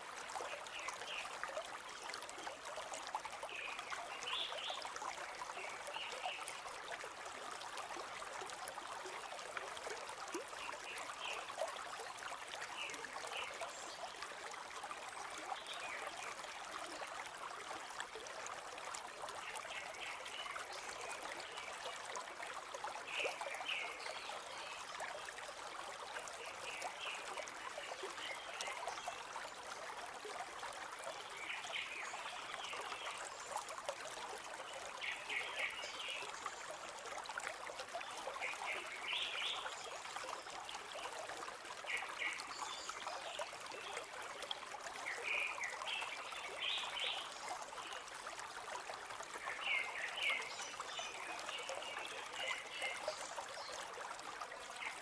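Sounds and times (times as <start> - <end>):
stream rushing and trickling: 0.0 - 55.0.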